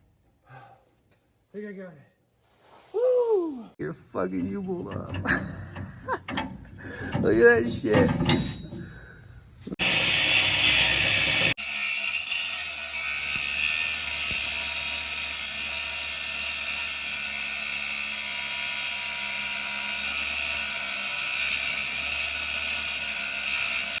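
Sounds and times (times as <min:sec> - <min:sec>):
loud noisy burst: 0:09.8 - 0:11.6
high mechanical whir: 0:09.8 - 0:12.3.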